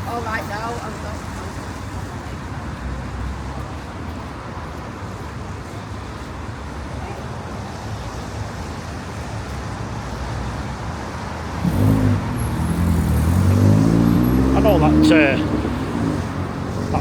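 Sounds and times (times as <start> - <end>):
road traffic rumble: 0.0 - 17.0.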